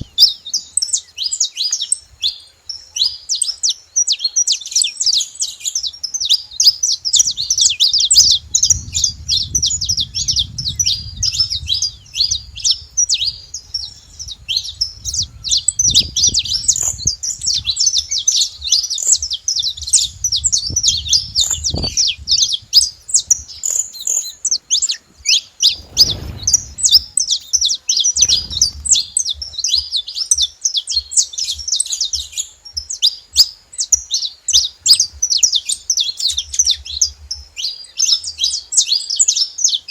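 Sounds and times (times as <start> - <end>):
finches chirping: 0.0 - 39.4
low rumbling noise: 6.5 - 23.4, 25.6 - 29.7.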